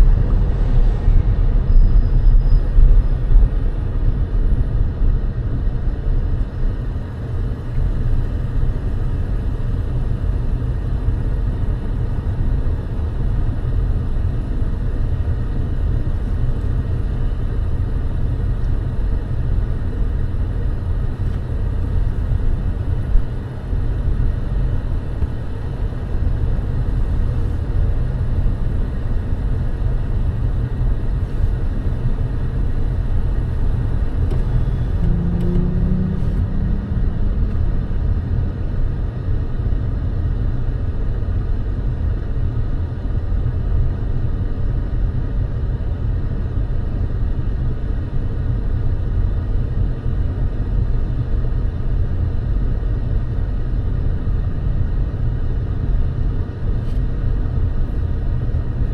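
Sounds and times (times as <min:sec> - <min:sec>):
car driving rumble: 0:00.0 - 0:43.7.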